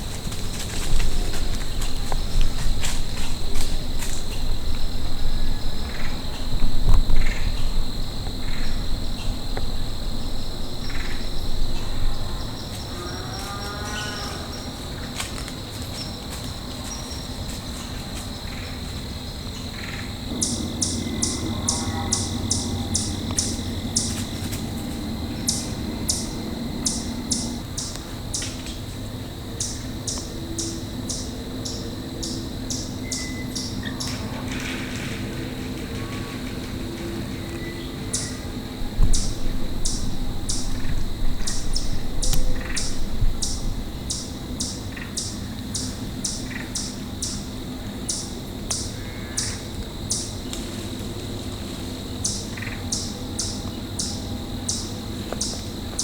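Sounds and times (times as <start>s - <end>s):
high insect drone: 0.0s - 56.0s
low rumble: 20.3s - 26.8s
animal calling: 20.4s - 24.3s.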